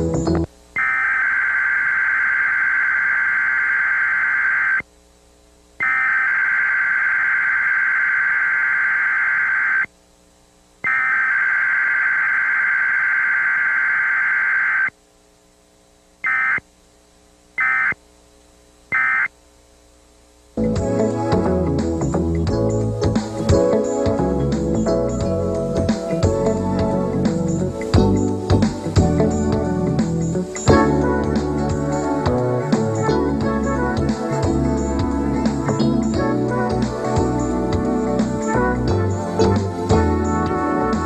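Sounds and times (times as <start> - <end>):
harsh buzzing digital data bursts: 0.8 - 4.8, 5.8 - 9.9, 10.8 - 14.9, 16.2 - 16.7, 17.6 - 18.0, 18.9 - 19.3.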